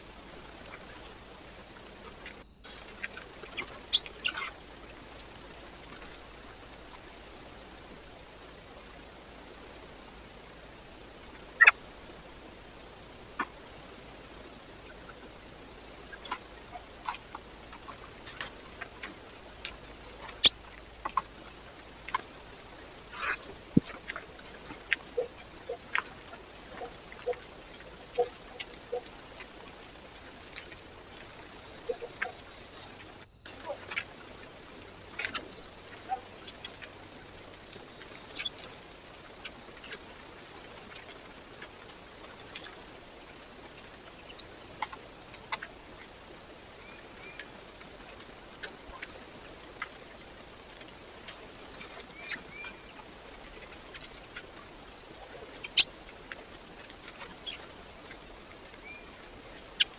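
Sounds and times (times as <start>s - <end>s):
microphone hiss: 0.0s - 59.9s
birds tapping and clicking: 16.2s - 22.4s, 30.5s - 37.0s.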